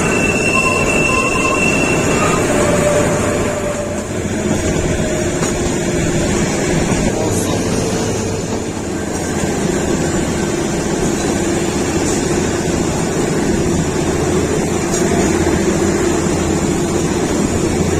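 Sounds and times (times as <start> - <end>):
train wheels rumbling: 0.0 - 17.9.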